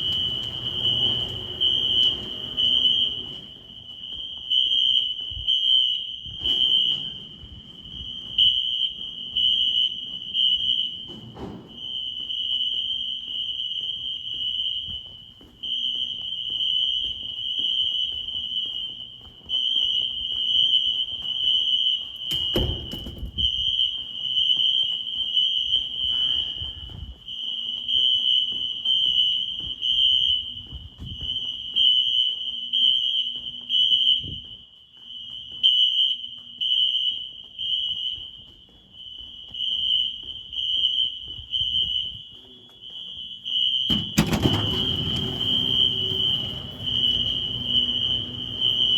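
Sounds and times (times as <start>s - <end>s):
fire alarm horn tone: 0.0s - 34.5s, 39.0s - 48.9s
loud thump: 43.9s - 48.9s.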